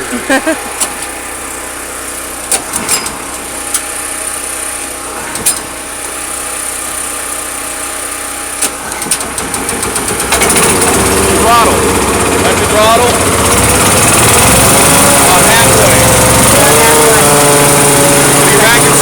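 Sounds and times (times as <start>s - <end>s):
generator engine running: 0.0s - 19.0s
small engine starting up: 0.0s - 19.0s
sharp clicks and knocks: 0.7s - 1.2s, 2.4s - 4.0s, 5.1s - 5.8s, 8.6s - 11.0s.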